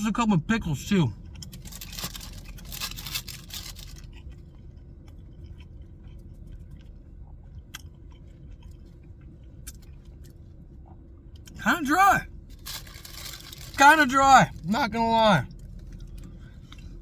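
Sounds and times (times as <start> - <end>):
steady low hum: 0.0 - 17.0
person chewing crunchy sandwich: 1.2 - 11.6, 15.5 - 17.0.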